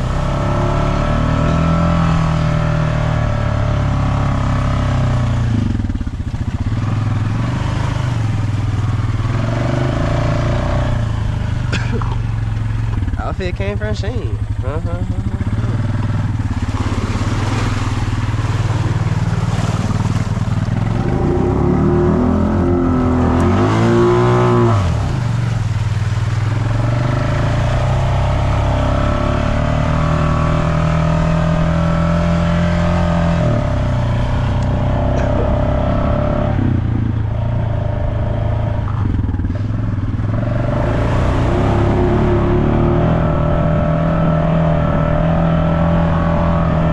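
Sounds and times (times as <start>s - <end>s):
off-road vehicle engine revving: 0.0s - 46.9s.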